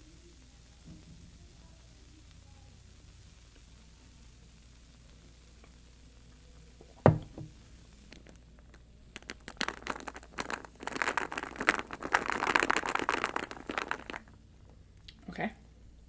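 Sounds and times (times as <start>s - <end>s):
sharp knock: 7.0s - 7.5s
dense irregular crackling: 8.0s - 14.4s.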